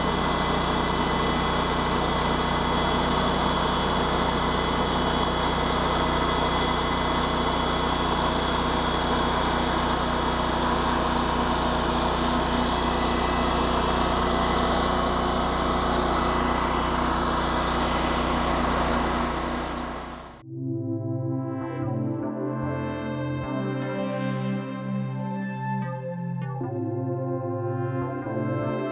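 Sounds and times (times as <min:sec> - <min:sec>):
small gasoline engine running: 0:00.0 - 0:20.4.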